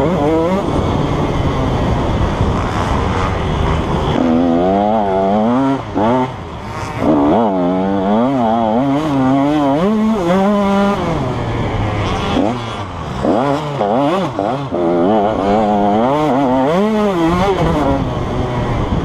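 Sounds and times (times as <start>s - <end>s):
motocross engine revving: 0.0s - 19.0s.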